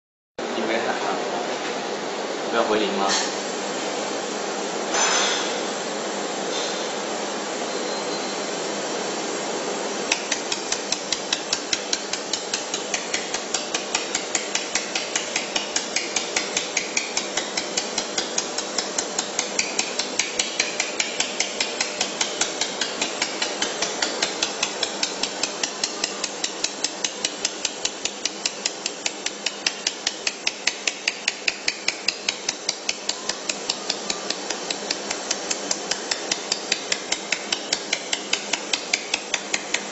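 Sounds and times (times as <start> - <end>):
welding machine hissing: 8.4 - 39.9
welding snaps: 10.1 - 39.9.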